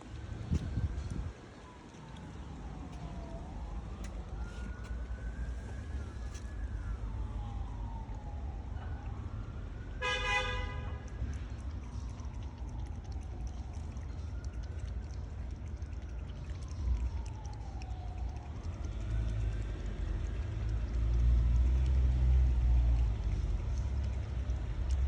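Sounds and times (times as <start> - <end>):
low traffic rumble: 0.0 - 25.0
siren wailing: 0.2 - 24.7
horn honk: 10.0 - 11.0.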